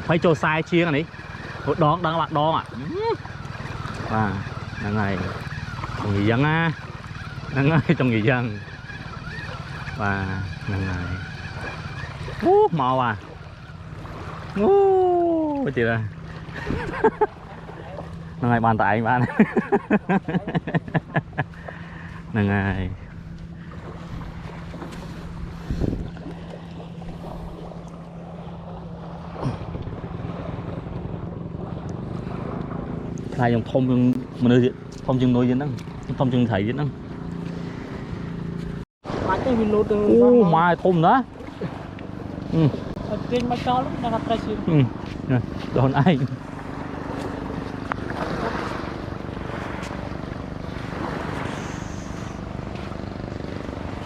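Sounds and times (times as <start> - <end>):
engine humming: 0.0 - 54.0
surf: 0.0 - 54.0
wind: 0.0 - 54.0
wind noise on microphone: 25.1 - 26.5.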